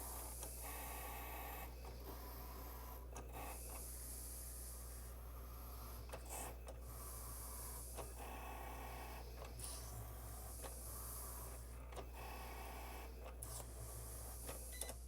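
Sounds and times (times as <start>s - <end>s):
small machine clicks: 14.4s - 15.0s.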